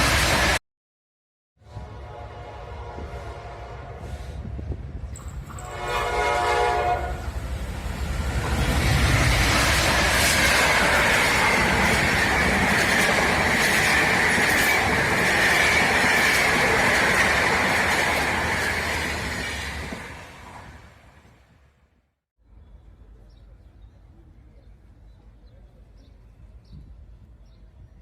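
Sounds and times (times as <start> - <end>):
train rushing past: 0.0 - 0.6, 1.6 - 21.7
train horn: 1.6 - 4.4, 5.6 - 7.3.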